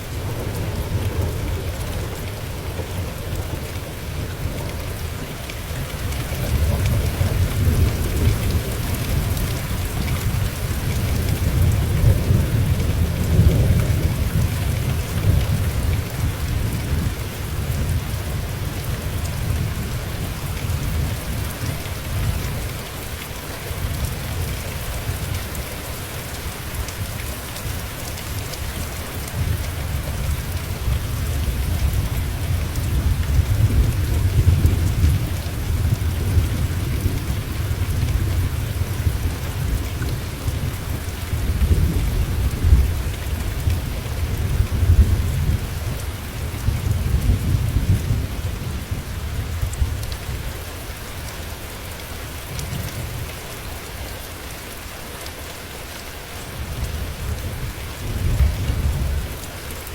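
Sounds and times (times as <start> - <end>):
thunder rumbling: 0.0 - 22.7, 28.8 - 50.6, 56.6 - 59.5
steady rain falling: 0.0 - 59.9.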